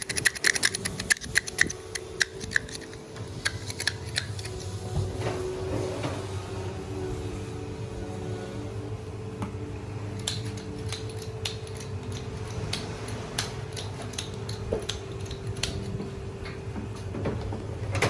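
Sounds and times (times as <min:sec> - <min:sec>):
kitchen utensils clicking: 0:00.0 - 0:06.3, 0:10.2 - 0:16.0
low kitchen hum: 0:00.0 - 0:18.0.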